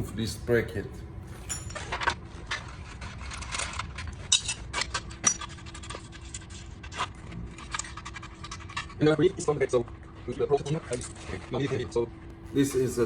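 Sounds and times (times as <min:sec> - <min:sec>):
brief metallic rings: 0:01.3 - 0:01.9
hand tools clinking on metal: 0:01.3 - 0:02.1.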